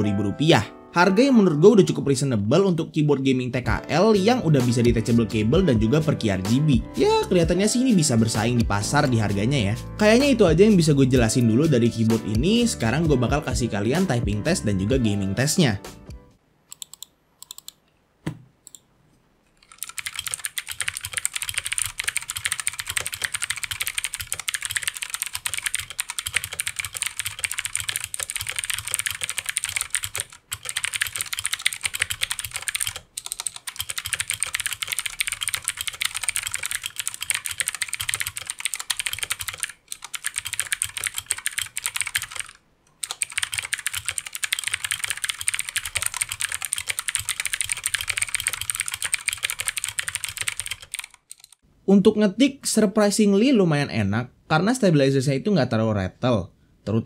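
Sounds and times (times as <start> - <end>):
typing on mechanical keyboard: 19.6 - 51.6.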